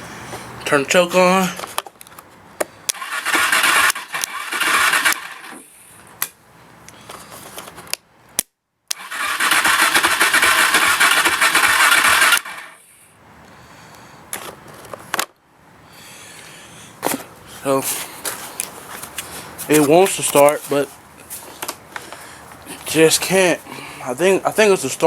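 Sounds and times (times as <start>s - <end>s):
electric starter cranking engine: 2.9s - 5.6s, 9.0s - 12.8s
starter clicks: 2.9s - 5.6s.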